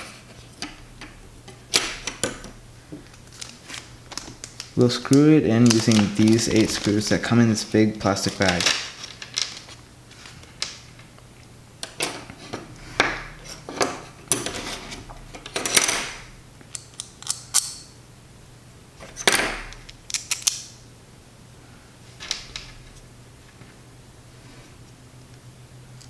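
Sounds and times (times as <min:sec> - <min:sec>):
scraping or rustling: 0:03.0 - 0:10.6
clicks and taps of parts: 0:11.8 - 0:17.9, 0:19.2 - 0:20.7.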